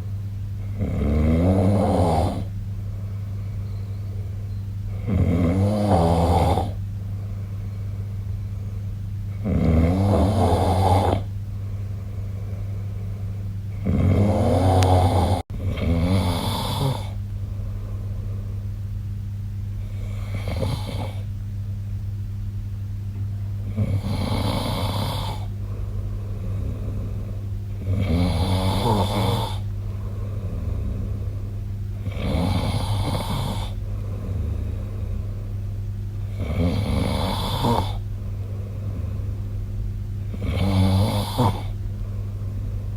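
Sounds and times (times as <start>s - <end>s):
steady low hum: 0.0s - 42.9s
person snoring: 0.6s - 2.5s, 4.9s - 6.8s, 9.4s - 11.3s, 13.7s - 17.2s, 19.8s - 21.3s, 23.6s - 35.5s, 36.2s - 39.4s, 40.3s - 41.8s.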